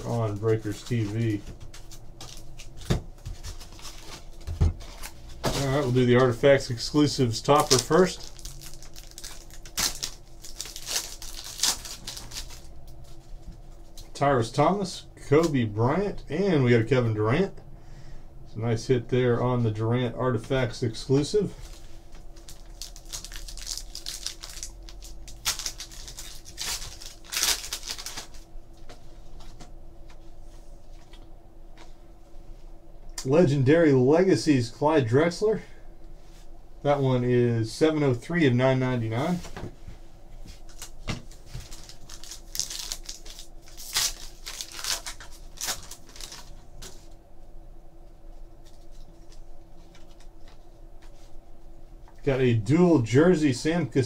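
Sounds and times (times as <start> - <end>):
wrappers crinkling and tearing: 0.0 - 14.1, 21.5 - 28.5, 40.6 - 47.1.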